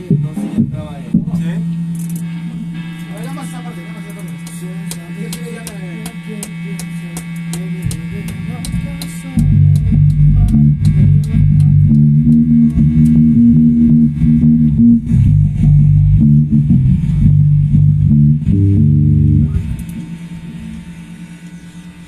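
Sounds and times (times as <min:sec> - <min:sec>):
bass guitar line: 0:00.0 - 0:01.7, 0:05.2 - 0:21.4
guitar: 0:00.0 - 0:22.0
ticking beat: 0:04.4 - 0:19.5.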